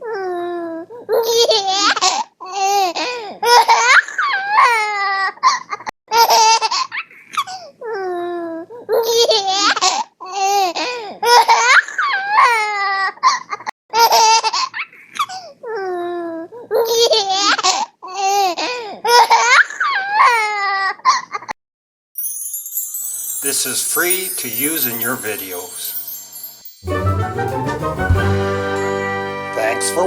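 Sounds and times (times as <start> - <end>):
baby giggling and squealing: 1.1 - 21.5.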